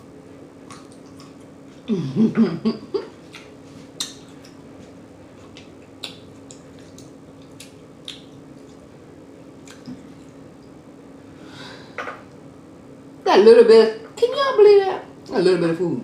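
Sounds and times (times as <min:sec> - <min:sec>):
steady low hum: 0:00.0 - 0:16.0
person chewing with mouth open: 0:00.6 - 0:01.9, 0:03.1 - 0:09.0, 0:09.6 - 0:10.8.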